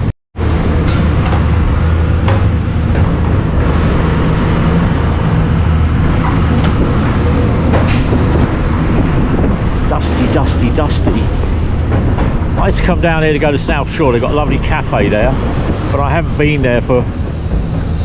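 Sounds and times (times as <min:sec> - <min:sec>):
motor vehicle engine drone: 0:00.0 - 0:18.0.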